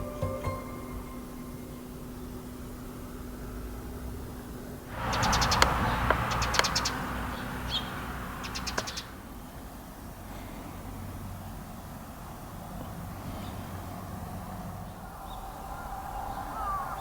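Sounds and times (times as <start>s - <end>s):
small birds chirping: 0.0s - 17.0s
broad rushing noise: 4.9s - 10.4s, 14.4s - 17.0s.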